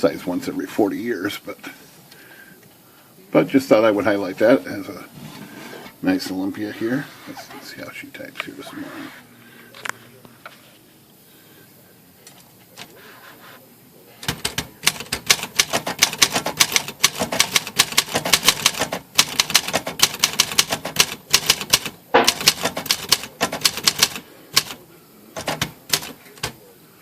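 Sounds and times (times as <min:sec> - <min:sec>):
manual typewriter typing: 0:14.2 - 0:24.8, 0:25.4 - 0:26.6.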